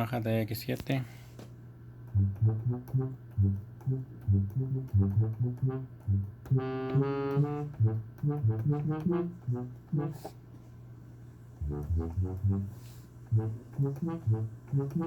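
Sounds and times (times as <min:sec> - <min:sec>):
synthesizer tuba notes: 0:02.1 - 0:10.4, 0:11.6 - 0:15.0.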